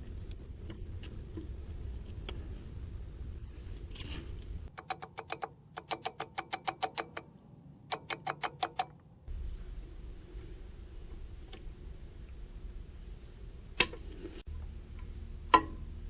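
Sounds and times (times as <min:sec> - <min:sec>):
ratchet clicking: 0:04.7 - 0:07.3, 0:07.9 - 0:09.0.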